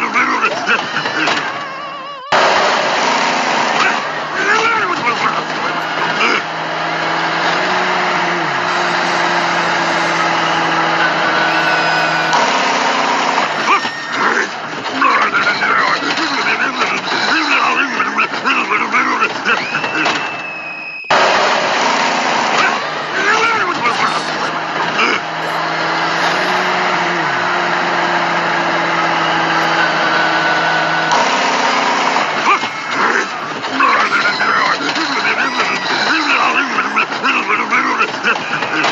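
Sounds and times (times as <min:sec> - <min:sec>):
engine idling: 0:02.4 - 0:19.6, 0:21.1 - 0:37.6
short falling tone: 0:05.4 - 0:14.4.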